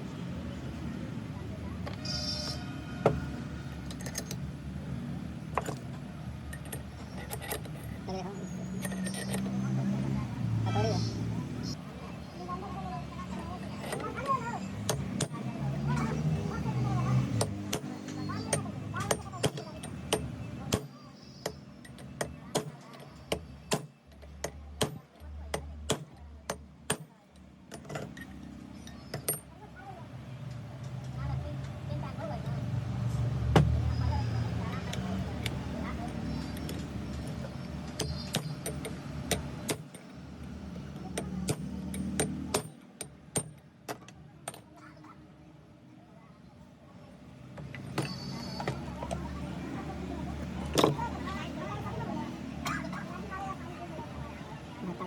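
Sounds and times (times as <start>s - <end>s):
tools and metal parts clicking: 1.8s - 4.8s, 5.4s - 10.2s, 13.4s - 16.1s, 17.2s - 29.7s, 34.0s - 44.8s, 47.6s - 49.4s, 50.6s - 51.3s
hammer striking metal: 41.1s - 44.6s.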